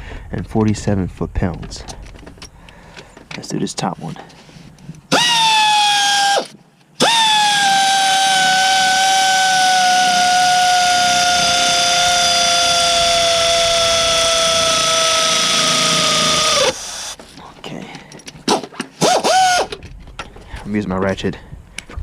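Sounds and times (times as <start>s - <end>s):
electric ratchet motor whining: 5.1s - 17.2s, 19.0s - 19.7s.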